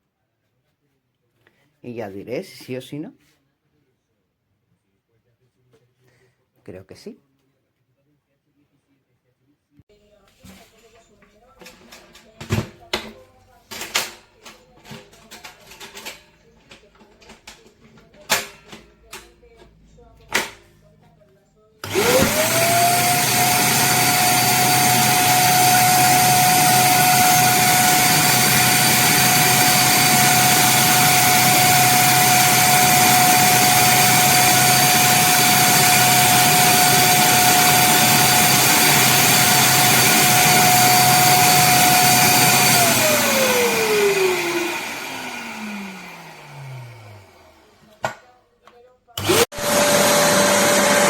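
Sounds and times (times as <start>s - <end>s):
vacuum cleaner motor whining: 21.8s - 47.9s, 49.2s - 51.0s.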